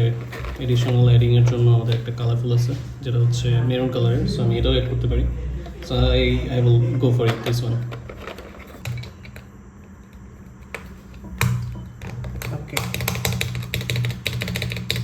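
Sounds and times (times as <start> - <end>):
low steady hum: 0.0 - 15.0
mechanical keyboard clicks: 12.3 - 15.0.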